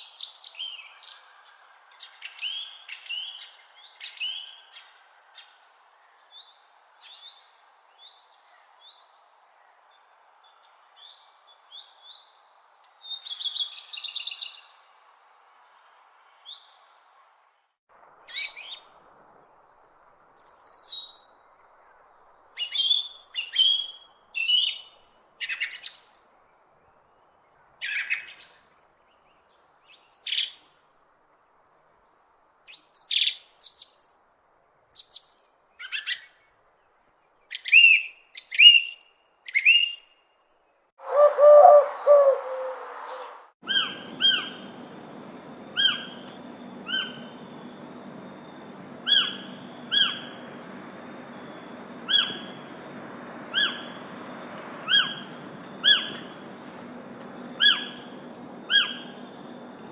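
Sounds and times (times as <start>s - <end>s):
birds chirping: 18.3s - 19.0s, 20.4s - 21.3s, 41.0s - 59.9s
low loud bird call: 41.0s - 44.8s.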